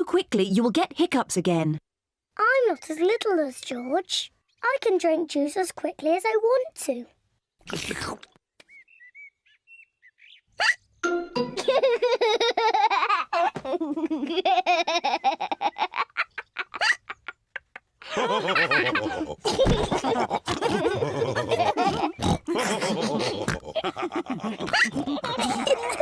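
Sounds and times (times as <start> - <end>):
cartoon pigs laughing and oinking: 11.6 - 26.0.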